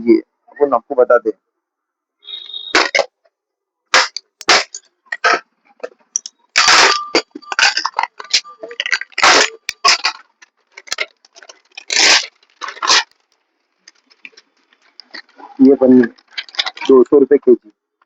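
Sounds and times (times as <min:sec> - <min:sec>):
plastic scraping: 0:04.0 - 0:17.1.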